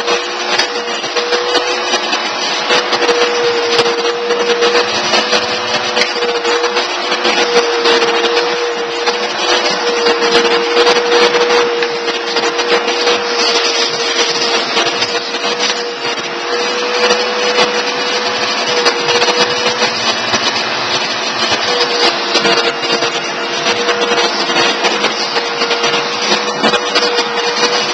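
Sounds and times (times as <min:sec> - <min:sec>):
vacuum cleaner whine: 0:00.0 - 0:27.9.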